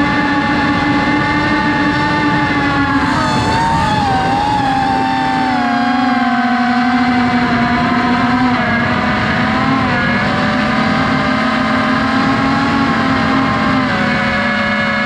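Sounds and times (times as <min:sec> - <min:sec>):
drone propellers whining: 0:02.6 - 0:08.0.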